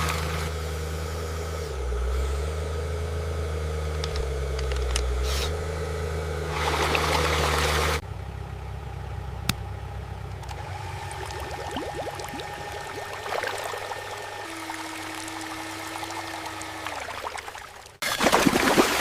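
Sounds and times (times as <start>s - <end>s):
quiet whir: 0.0s - 18.0s
toy drilling machine engine drone: 10.5s - 17.4s.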